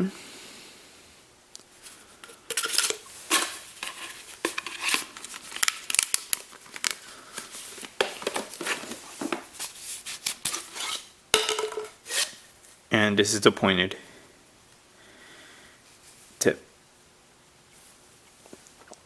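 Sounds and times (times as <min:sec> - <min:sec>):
packaging crinkling: 0:02.5 - 0:11.0.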